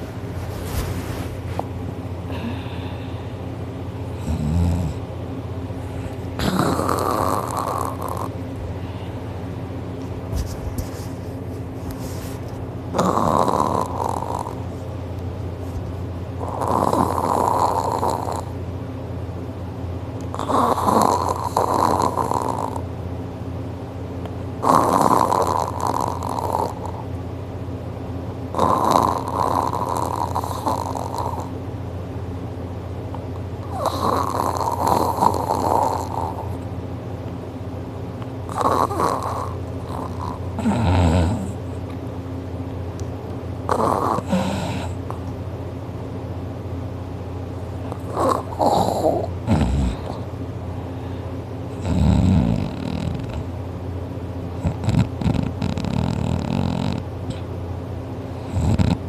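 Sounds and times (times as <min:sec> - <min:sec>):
quiet breathing: 0:00.6 - 0:03.5, 0:07.4 - 0:09.4
man snoring loudly: 0:04.2 - 0:05.0, 0:06.4 - 0:08.4, 0:13.0 - 0:14.6, 0:16.4 - 0:18.5, 0:20.4 - 0:22.8, 0:24.6 - 0:27.0, 0:28.5 - 0:31.5, 0:33.6 - 0:36.5, 0:38.5 - 0:41.6, 0:43.7 - 0:45.0, 0:48.1 - 0:50.2, 0:51.8 - 0:53.5, 0:54.6 - 0:57.0, 0:58.4 - 0:59.0.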